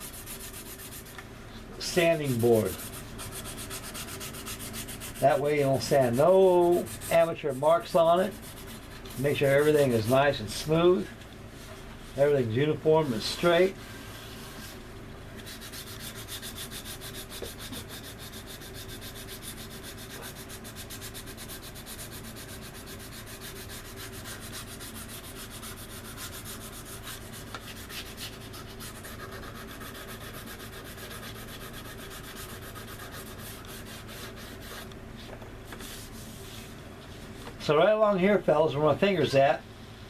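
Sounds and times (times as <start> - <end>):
sanding stick scraping resin: 0.0 - 1.2, 1.8 - 10.8, 15.4 - 35.0, 35.7 - 36.7.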